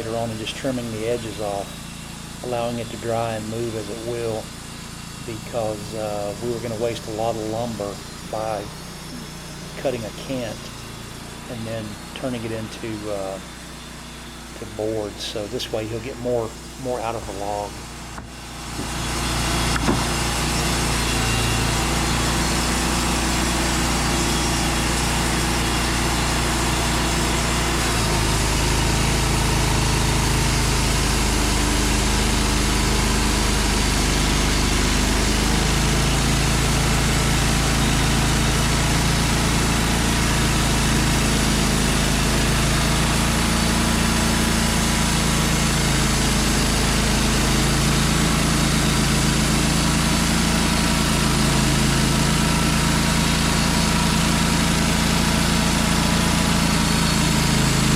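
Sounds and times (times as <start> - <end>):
sawmill engine running: 0.0 - 57.9.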